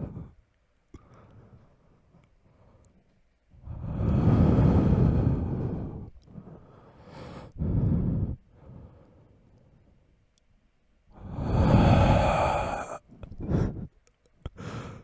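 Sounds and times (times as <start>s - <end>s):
heavy breathing: 0.0s - 0.4s, 1.0s - 9.9s, 11.1s - 15.0s.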